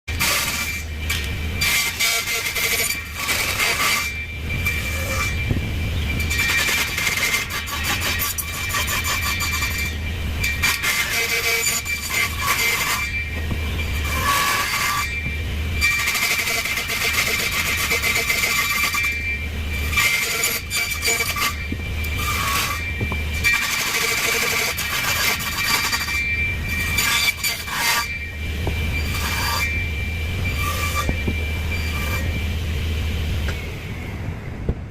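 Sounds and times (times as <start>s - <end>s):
low motor hum: 0.1s - 7.8s, 11.8s - 16.1s, 21.3s - 23.5s, 28.1s - 34.9s
high saw whine: 0.1s - 34.6s
table saw cutting wood: 10.5s - 13.2s, 14.0s - 15.1s, 19.8s - 26.2s, 26.8s - 28.2s, 29.0s - 29.8s.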